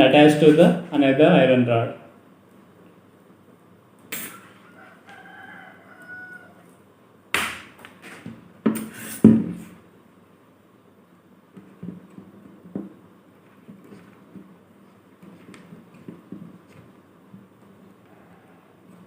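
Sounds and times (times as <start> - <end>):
rooster crowing: 4.6 - 6.8, 18.0 - 19.0.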